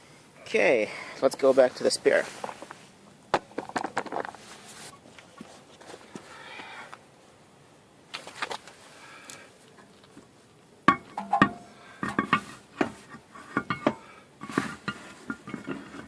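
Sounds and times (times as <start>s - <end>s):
metal tools clanking: 10.9s - 12.5s.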